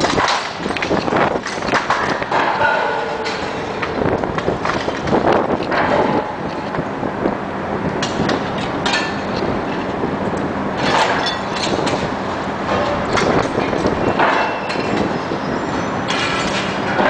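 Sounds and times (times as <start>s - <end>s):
bricks crashing down: 0.0s - 3.6s
diesel engine running: 0.0s - 17.0s.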